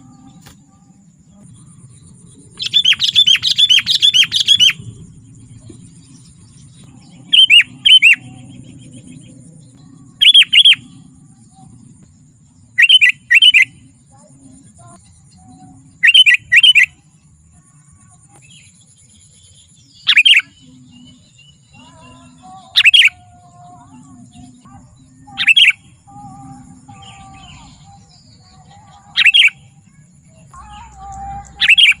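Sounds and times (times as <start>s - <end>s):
bulbul calling: 2.5s - 5.0s, 7.1s - 8.4s, 10.2s - 10.9s, 12.8s - 13.7s, 16.0s - 16.9s, 20.0s - 20.7s, 21.8s - 23.2s, 25.3s - 29.7s, 30.5s - 32.0s
faint bird calls: 21.7s - 32.0s.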